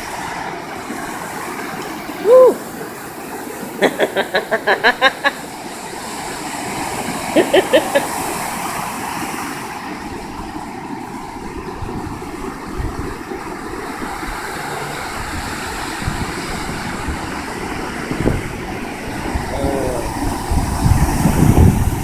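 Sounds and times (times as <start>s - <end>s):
ocean surf washing ashore: 0.0s - 22.0s
wind buffeting microphone: 9.9s - 22.0s.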